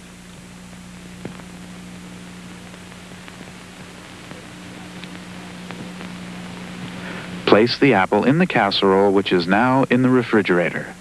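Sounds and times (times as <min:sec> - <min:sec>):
even hiss: 0:00.0 - 0:11.0
low electrical hum: 0:00.0 - 0:11.0
faint clicks: 0:00.3 - 0:07.5.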